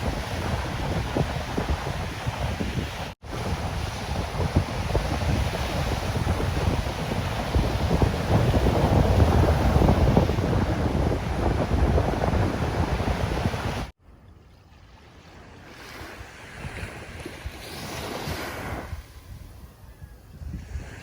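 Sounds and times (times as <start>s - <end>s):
ocean surf rushing: 0.0s - 13.9s
wind on microphone: 0.0s - 14.0s, 15.6s - 21.0s.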